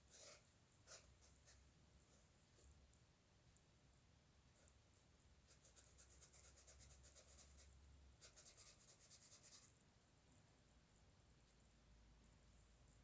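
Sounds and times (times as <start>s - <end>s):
pen scratching on paper: 0.1s - 1.6s, 5.5s - 9.7s.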